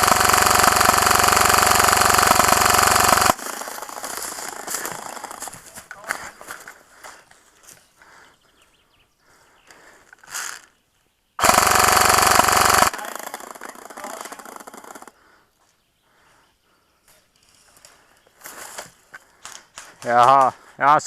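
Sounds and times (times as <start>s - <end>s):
airsoft gun firing full-auto: 0.0s - 5.5s, 11.4s - 15.1s.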